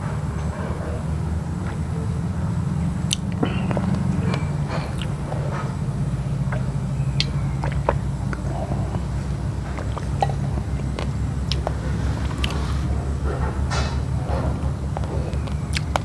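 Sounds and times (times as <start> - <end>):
steady low rumble: 0.0 - 16.0
raw rice grains crunching: 9.6 - 13.3.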